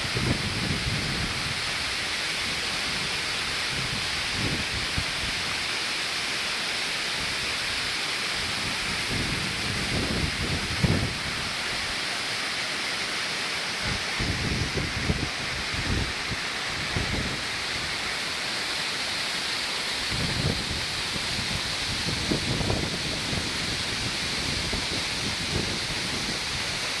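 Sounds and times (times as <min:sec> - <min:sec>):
wind rumbling on microphone: 0:00.0 - 0:05.6, 0:08.4 - 0:11.9, 0:13.8 - 0:18.2, 0:20.0 - 0:27.0
waterfall rushing: 0:00.0 - 0:27.0.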